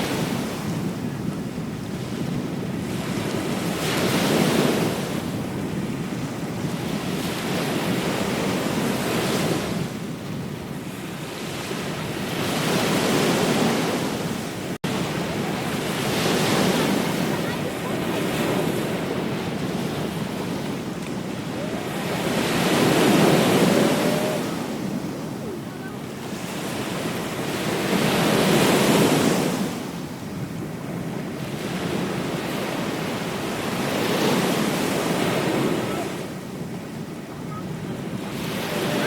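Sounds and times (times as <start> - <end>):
ocean surf breaking: 0.0 - 39.0.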